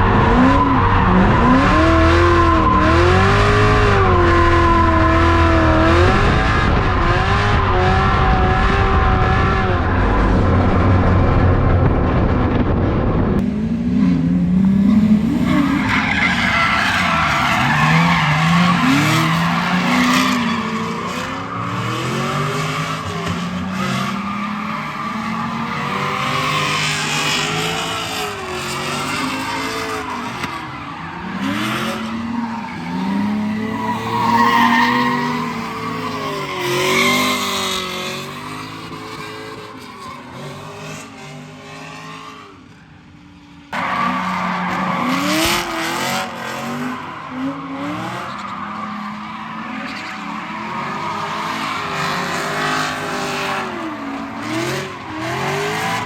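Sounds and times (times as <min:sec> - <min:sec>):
car engine revving: 0:00.0 - 0:39.7.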